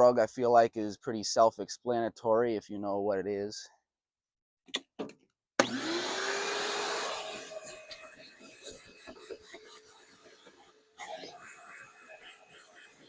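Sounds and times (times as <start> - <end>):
vacuum cleaner motor whine: 5.6 - 13.0.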